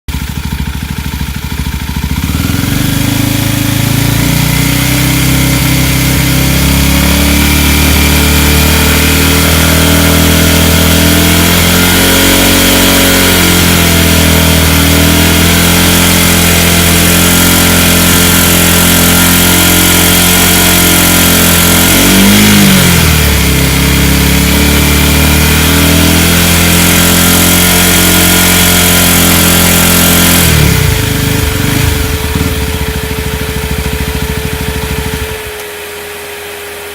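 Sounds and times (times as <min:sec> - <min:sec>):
engine at high revs: 0:01.3 - 0:36.9.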